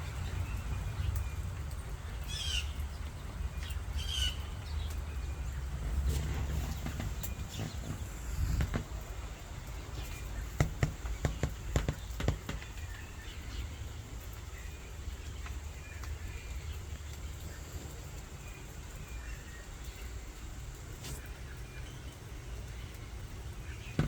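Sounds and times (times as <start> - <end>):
low rumble of wind: 0.0 - 24.0
sharp knocks: 6.2 - 9.0, 10.5 - 12.8.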